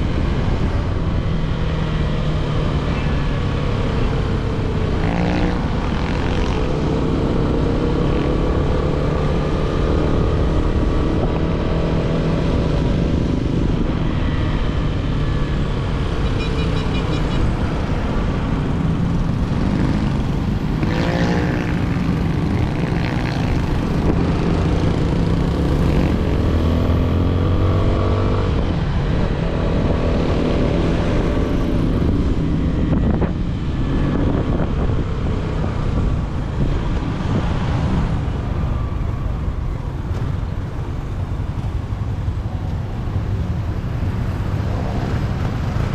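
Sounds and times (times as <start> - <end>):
motorcycle engine revving: 19.3 - 36.3.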